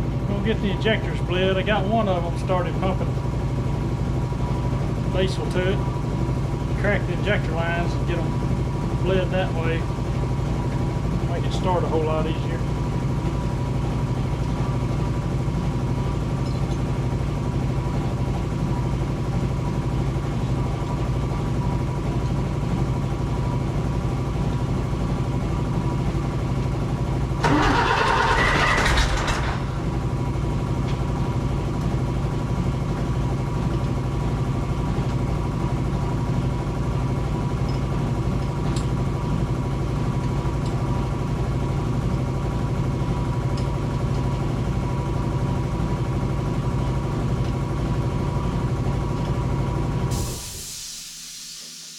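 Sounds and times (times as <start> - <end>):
engine running: 0.0 - 50.6
loud noisy burst: 27.4 - 29.6.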